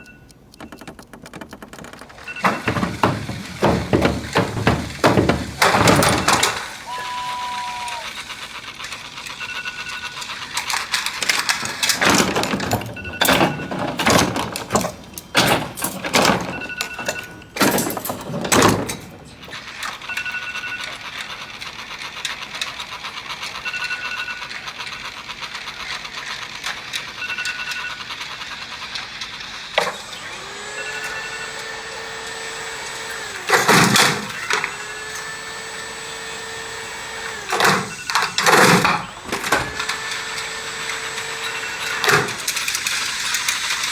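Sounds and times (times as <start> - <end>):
phone alarm beeping: 0.0 - 1.0, 2.2 - 8.1, 13.0 - 13.8, 16.3 - 17.5, 30.1 - 42.8
rustling and knocking: 0.6 - 6.6.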